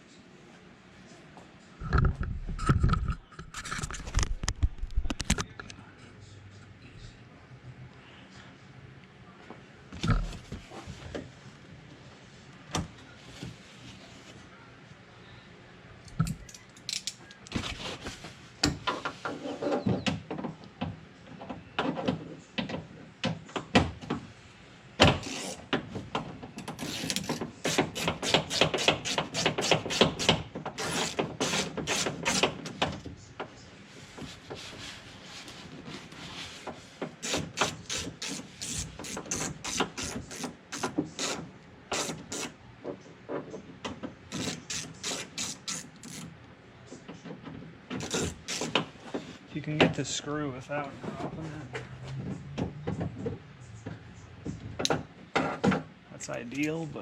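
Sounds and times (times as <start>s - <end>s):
tool scraping against metal: 25.2s - 25.7s, 26.7s - 32.6s, 36.1s - 42.6s, 44.3s - 46.3s, 48.0s - 49.3s.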